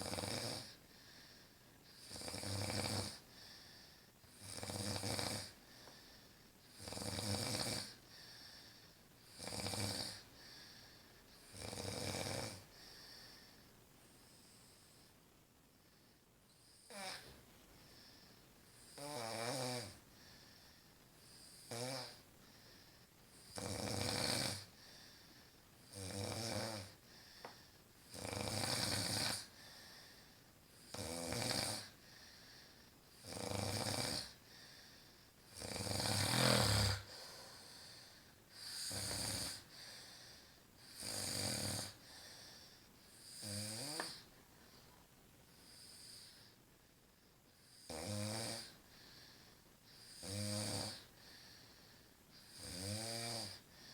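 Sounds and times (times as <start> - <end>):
woman snoring: 0.0 - 0.8, 2.0 - 3.2, 4.4 - 5.6, 6.7 - 8.0, 9.3 - 10.3, 11.5 - 12.8, 16.6 - 17.4, 18.8 - 20.0, 21.4 - 22.2, 23.5 - 24.7, 25.9 - 27.0, 28.1 - 29.5, 30.8 - 32.0, 33.2 - 34.4, 35.5 - 39.8, 40.9 - 42.6, 43.2 - 44.3, 47.7 - 48.8, 50.0 - 51.1, 52.4 - 53.7.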